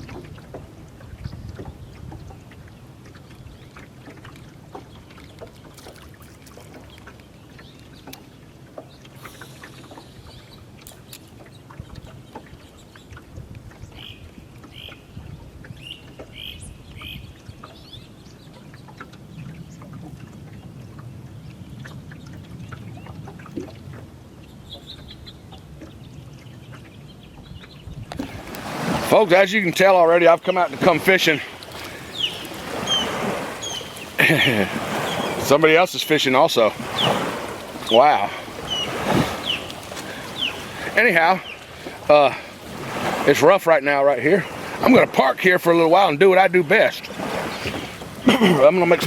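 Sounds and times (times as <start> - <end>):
choppy water lapping and splashing: 0.0 - 49.0
birds chirping: 1.3 - 13.2, 13.8 - 23.4, 24.3 - 49.0
low wind rumble: 19.2 - 43.3.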